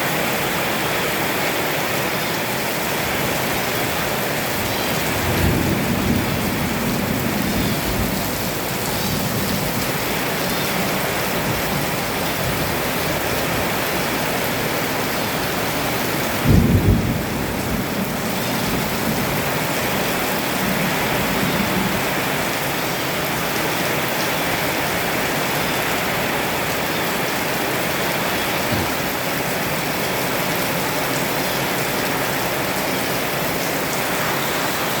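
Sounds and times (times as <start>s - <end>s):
heavy rain pouring: 0.0s - 35.0s
thunder rumbling: 3.3s - 13.8s, 16.1s - 22.5s
loud thunderclap: 16.4s - 19.3s.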